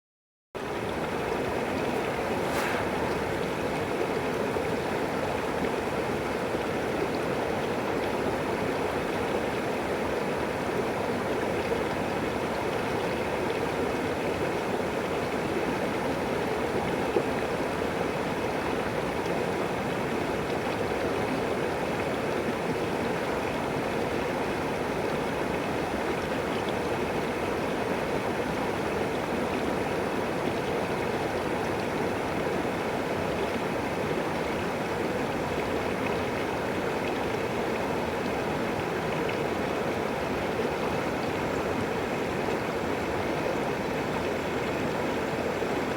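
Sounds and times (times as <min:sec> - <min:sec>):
stream water rushing: 0:01.7 - 0:04.2.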